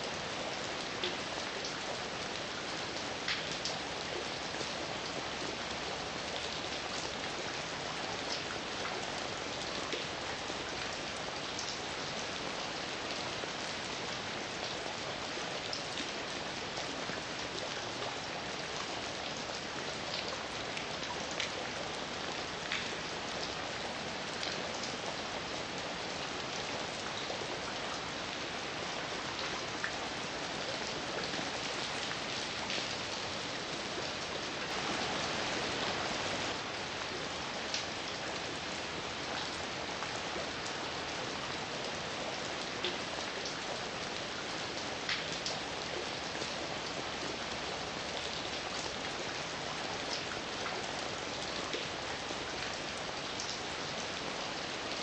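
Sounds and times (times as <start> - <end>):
raindrops ticking on a surface: 0.0 - 55.0
heavy rain hiss: 31.5 - 37.1.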